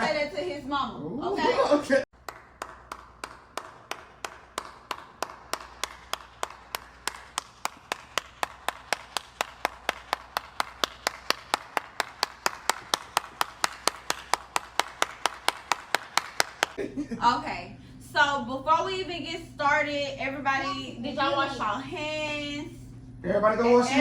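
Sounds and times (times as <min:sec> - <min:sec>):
rhythmic clapping: 0:02.1 - 0:16.8.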